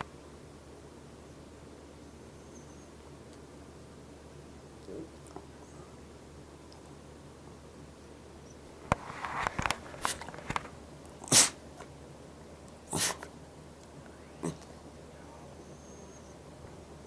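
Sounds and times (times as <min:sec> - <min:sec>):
dog sneezing: 0:11.2 - 0:11.6, 0:12.9 - 0:13.3.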